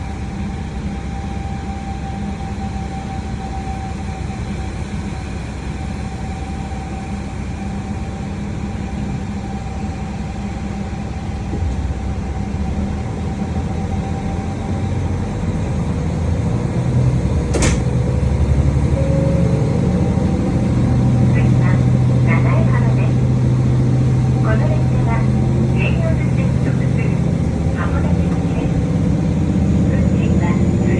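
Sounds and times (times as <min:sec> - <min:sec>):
diesel railcar engine idling: 0:00.0 - 0:30.9
sharp click: 0:17.6 - 0:17.9.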